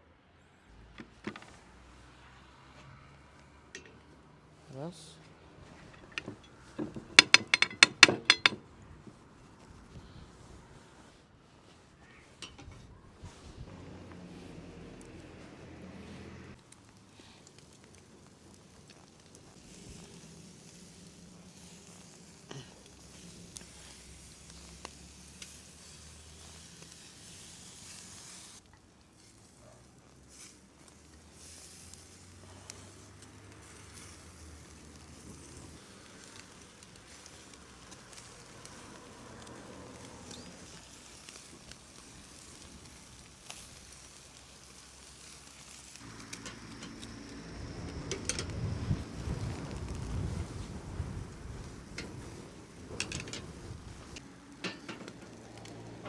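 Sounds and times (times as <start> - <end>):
food sizzling in a pan: 16.6 - 55.9.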